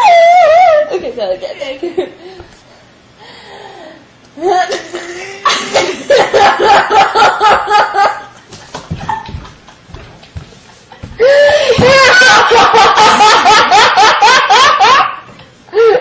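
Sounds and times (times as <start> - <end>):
girls laughing: 4.4 - 10.1, 10.9 - 16.0.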